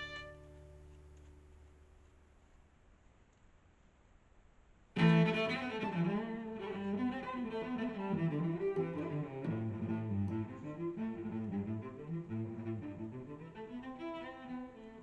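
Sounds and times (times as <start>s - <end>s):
bowed string music: 0.0s - 1.5s, 5.0s - 15.0s.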